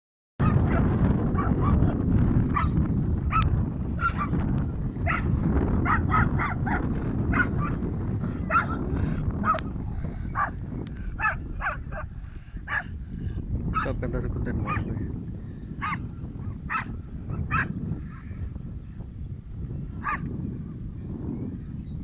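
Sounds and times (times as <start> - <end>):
dog barking in high yelps: 0.4 - 4.4, 5.0 - 7.8, 8.4 - 8.8, 9.4 - 9.6, 10.3 - 10.6, 11.2 - 12.1, 12.7 - 12.9, 14.7 - 14.9, 15.8 - 17.8, 20.0 - 20.2.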